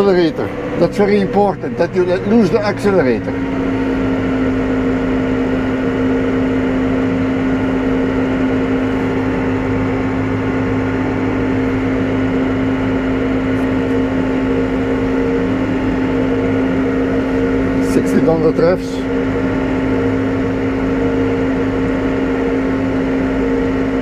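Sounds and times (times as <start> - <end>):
tractor diesel engine under load: 0.0 - 24.0.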